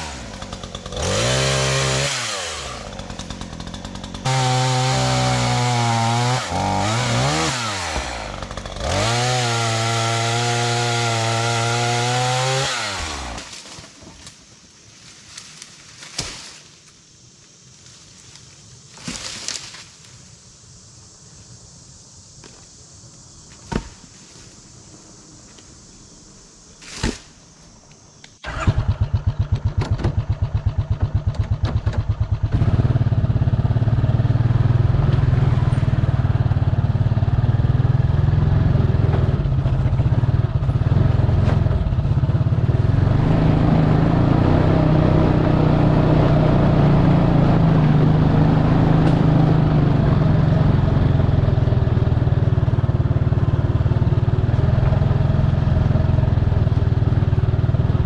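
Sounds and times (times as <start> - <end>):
engine starting and running: 0.0 - 5.7, 6.4 - 9.2, 28.3 - 58.0.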